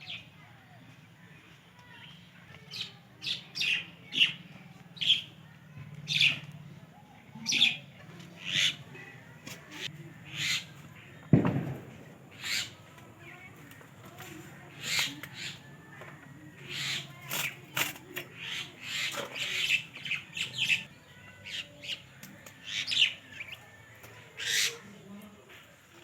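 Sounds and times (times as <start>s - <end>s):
bird chirping: 16.6s - 24.9s.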